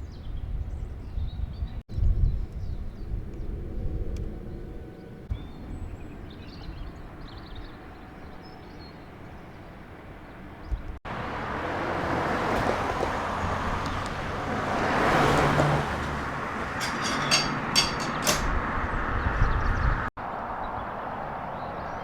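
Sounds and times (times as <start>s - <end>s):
vehicle passing by: 11.1s - 22.0s.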